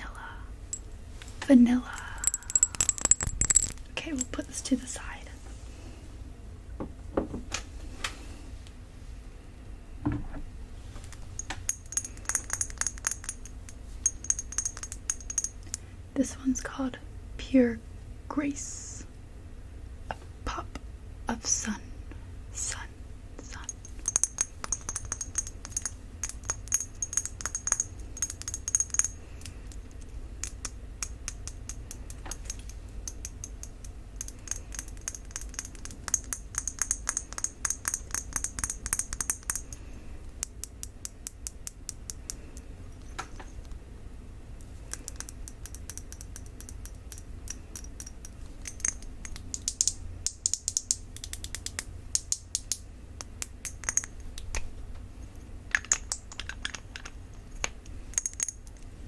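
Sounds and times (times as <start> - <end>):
fingernails tapping on glass bottle: 2.0 - 4.3, 11.4 - 15.8, 23.6 - 29.8, 30.4 - 40.6.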